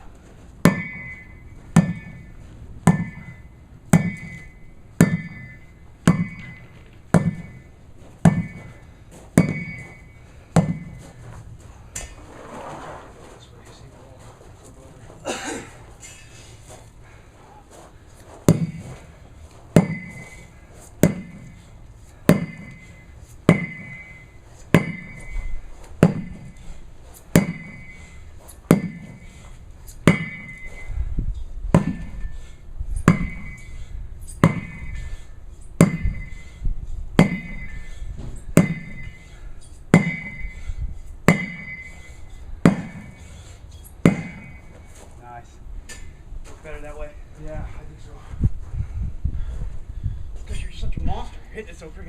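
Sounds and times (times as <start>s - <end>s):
sledgehammer striking a tire: 0.6s - 11.2s, 18.4s - 19.1s, 19.7s - 26.7s, 27.3s - 30.9s, 31.7s - 35.2s, 35.8s - 36.6s, 37.2s - 43.4s, 44.0s - 45.0s.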